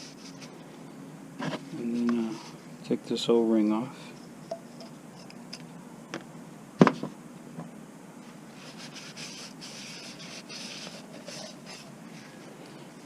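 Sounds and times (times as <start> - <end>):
scratchy rubbing: 8.6 - 12.4.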